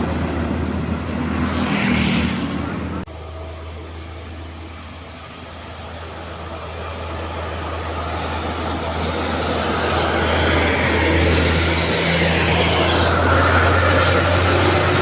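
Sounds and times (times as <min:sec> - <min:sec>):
heavy vehicle engine humming: 0:00.0 - 0:15.0.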